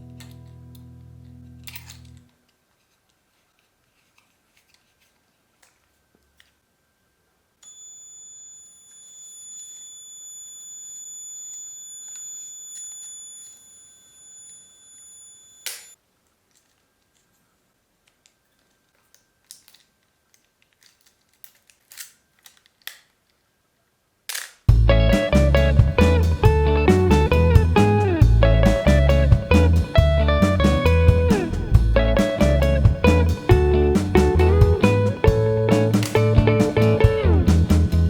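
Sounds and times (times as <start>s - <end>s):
camera flash charging whine: 7.6s - 16.0s.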